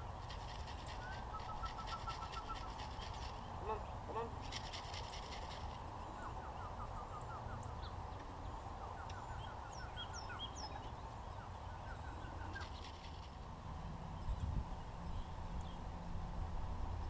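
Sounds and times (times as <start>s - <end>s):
birds chirping: 0.0s - 16.0s.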